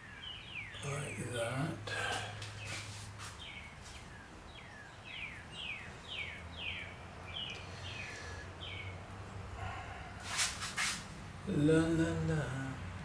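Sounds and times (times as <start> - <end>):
bird chirping: 0.0 - 9.4
brief rustling: 10.2 - 11.1.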